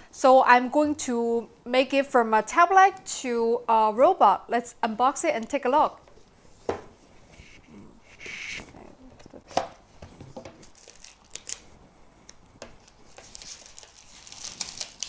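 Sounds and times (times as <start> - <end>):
packaging rustling and tearing: 10.6 - 11.8, 12.8 - 15.0.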